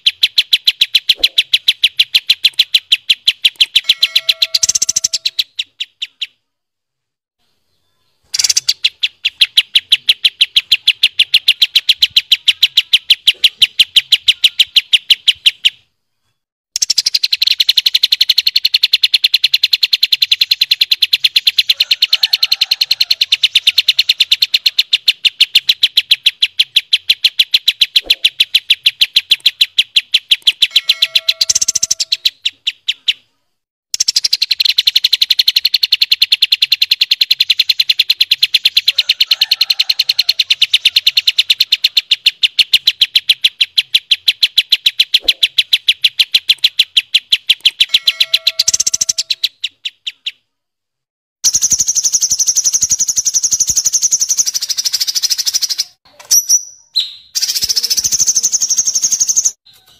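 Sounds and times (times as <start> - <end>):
bird rolling trill: 0.5 - 5.8, 21.2 - 33.1.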